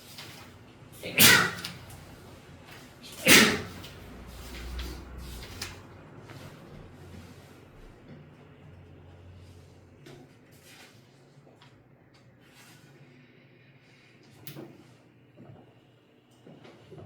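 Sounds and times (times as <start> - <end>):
low room hum: 0.0 - 17.0
faint handling rustles: 9.3 - 13.1.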